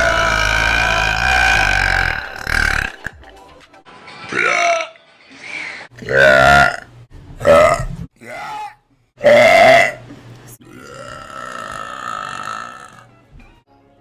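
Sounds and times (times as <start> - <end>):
woman burping: 9.2 - 10.0, 10.6 - 13.0.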